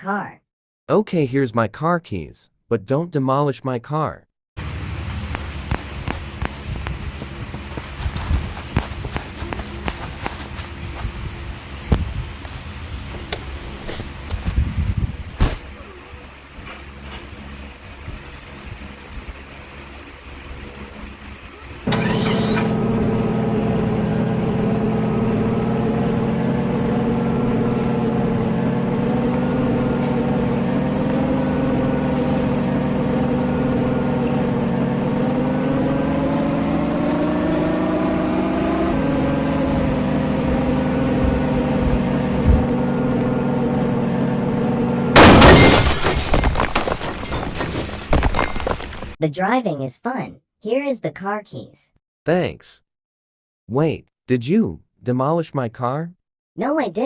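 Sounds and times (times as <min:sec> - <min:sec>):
car engine running: 0:04.6 - 0:14.5, 0:21.8 - 0:49.2
loud crash with shattering: 0:45.2 - 0:49.2.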